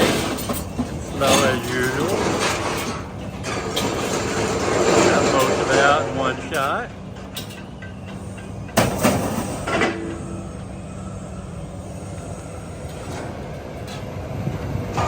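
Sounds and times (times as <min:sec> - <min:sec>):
metal scraping and clanking: 0:00.0 - 0:10.3
crane engine running: 0:00.0 - 0:15.0.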